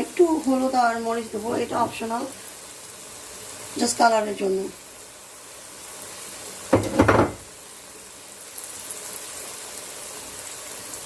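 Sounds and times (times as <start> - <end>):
chicken sizzling in oil: 0.0 - 11.0.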